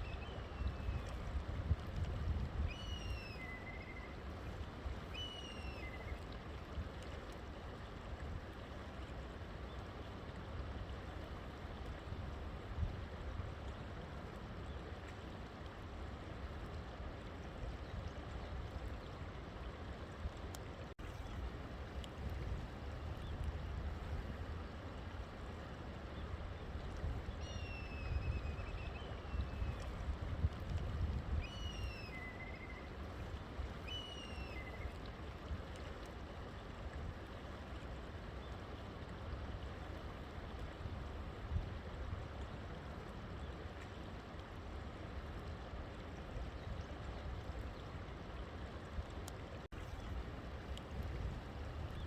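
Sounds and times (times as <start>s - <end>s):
river water flowing: 0.0s - 52.0s
bird whistled calls: 2.7s - 4.1s, 5.2s - 6.1s, 31.4s - 32.9s, 33.9s - 34.8s.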